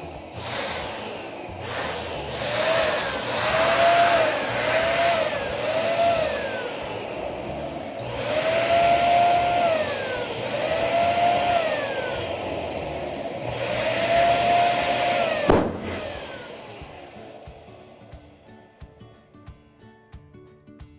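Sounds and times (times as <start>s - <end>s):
electric balloon pump whine: 0.0s - 17.6s
balloon bursting: 15.4s - 16.6s
rushing air: 15.5s - 16.8s.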